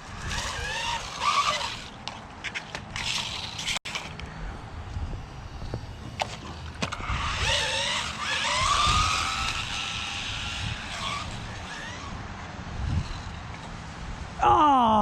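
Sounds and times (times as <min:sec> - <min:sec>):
rc car motor whining: 0:00.0 - 0:04.2, 0:05.6 - 0:13.7
tyre noise: 0:05.6 - 0:12.2.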